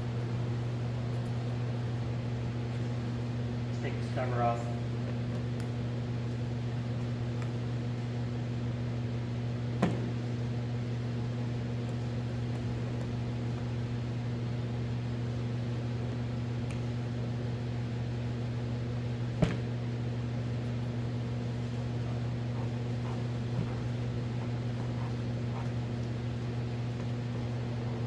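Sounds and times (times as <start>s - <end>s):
equipment humming: 18.1s - 28.0s.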